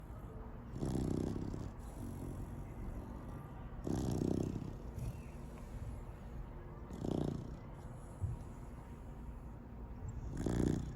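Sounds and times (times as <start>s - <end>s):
quiet dog breathing: 0.0s - 10.9s
puppy snoring: 0.7s - 3.1s, 3.8s - 5.3s, 6.9s - 7.7s, 10.1s - 10.9s.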